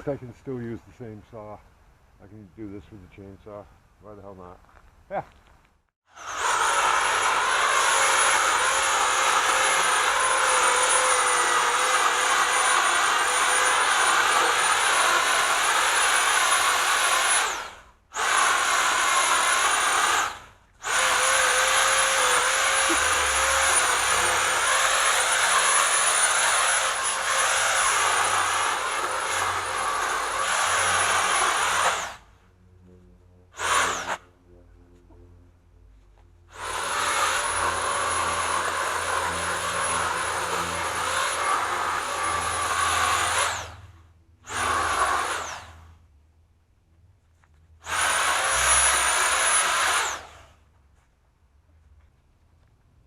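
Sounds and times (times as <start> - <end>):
chainsaw running with high whine: 6.1 - 32.3, 33.5 - 34.3, 36.5 - 45.9, 47.8 - 50.5.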